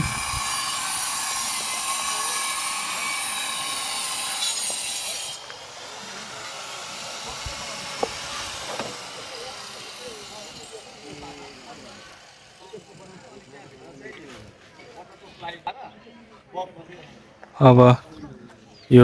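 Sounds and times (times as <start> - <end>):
power tool harsh hiss: 0.0 - 12.2
building site noise: 0.0 - 15.5.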